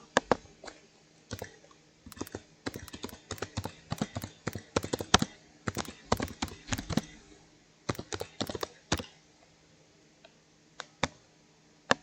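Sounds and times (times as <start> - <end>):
typing on computer keyboard: 2.1 - 5.2, 5.8 - 7.1, 7.9 - 8.7.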